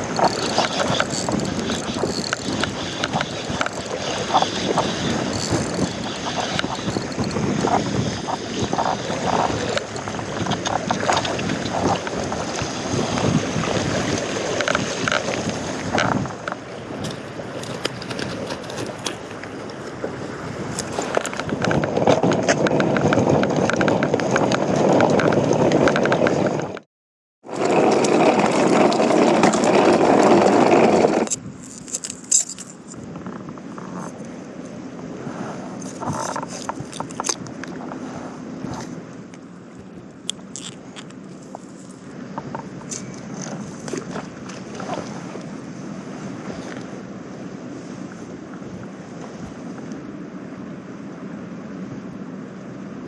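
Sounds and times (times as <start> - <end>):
handling clicks and knocks: 0.0 - 11.4, 31.2 - 33.0
wind buffeting microphone: 0.0 - 26.7.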